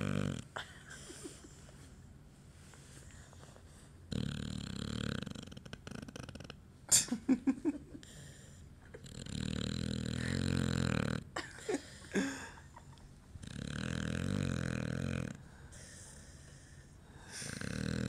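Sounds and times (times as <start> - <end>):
person snoring: 0.0 - 0.4, 4.1 - 6.6, 9.0 - 11.2, 13.4 - 15.4, 17.2 - 18.0.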